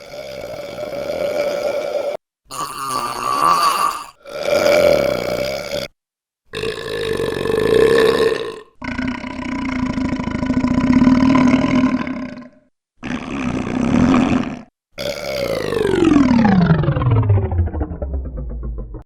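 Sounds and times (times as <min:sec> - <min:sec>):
digitally altered burps: 0:00.0 - 0:16.4.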